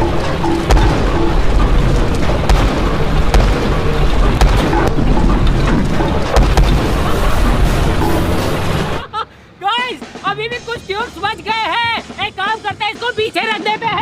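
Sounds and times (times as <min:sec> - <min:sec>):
sharp cracks: 0:00.0 - 0:09.0
road roller rumbling: 0:00.0 - 0:09.6.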